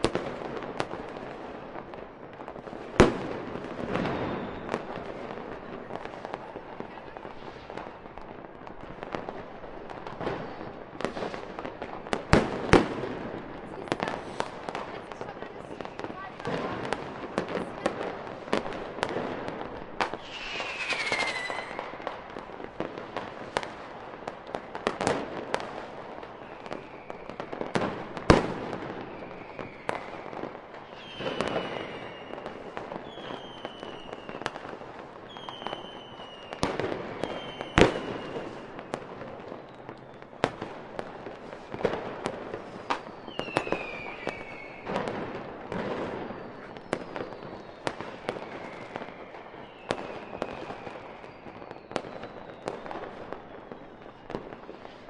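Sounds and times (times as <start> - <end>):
fireworks bangs: 0.0 - 55.0
fireworks whistles falling: 3.8 - 5.0, 20.0 - 22.4, 26.4 - 34.6, 35.3 - 40.6, 42.8 - 45.2, 45.9 - 55.0.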